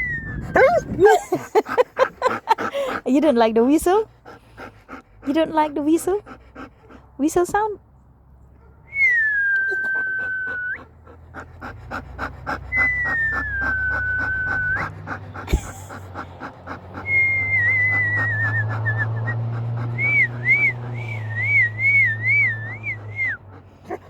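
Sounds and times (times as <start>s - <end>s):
person whistling: 0.0s - 0.6s, 8.9s - 10.9s, 12.8s - 14.9s, 17.1s - 19.4s, 20.0s - 23.4s
dog panting: 0.3s - 8.0s, 9.7s - 24.0s.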